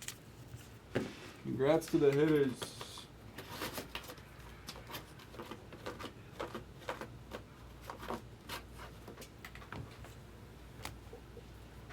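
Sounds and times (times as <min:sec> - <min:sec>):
cards and packaging rustling: 0:01.7 - 0:10.2.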